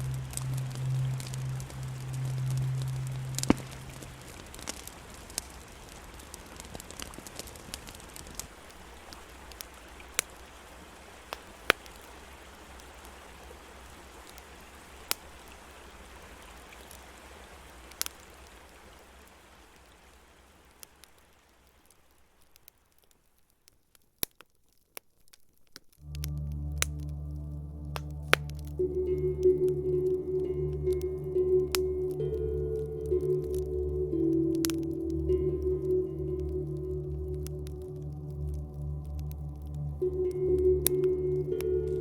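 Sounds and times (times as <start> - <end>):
low hum: 0.0 - 5.1, 26.0 - 42.0
campfire crackling: 0.0 - 42.0.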